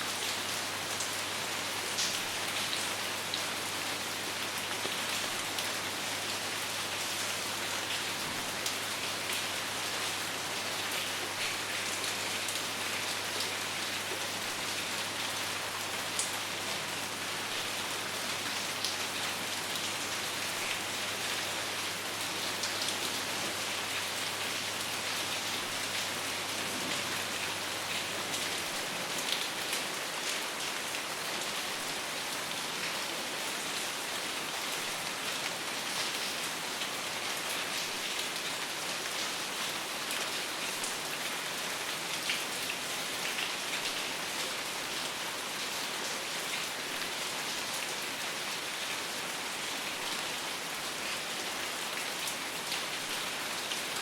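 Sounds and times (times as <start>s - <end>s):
steady rain hiss: 0.0s - 54.0s.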